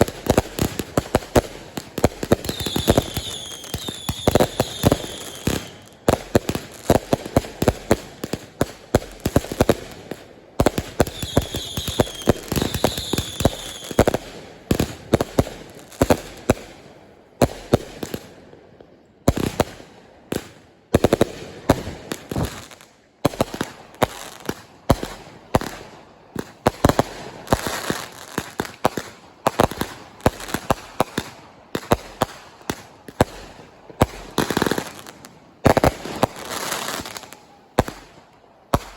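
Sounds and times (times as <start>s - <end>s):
firework bangs and crackling: 0.0s - 38.9s
high firework whistles: 2.4s - 6.1s, 11.0s - 14.0s.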